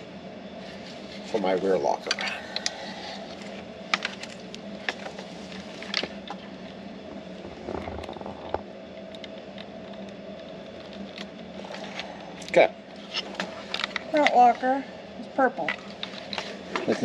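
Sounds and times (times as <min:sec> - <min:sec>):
steady low hum: 0:00.0 - 0:17.0
wiring clicks and rustles: 0:03.3 - 0:14.4.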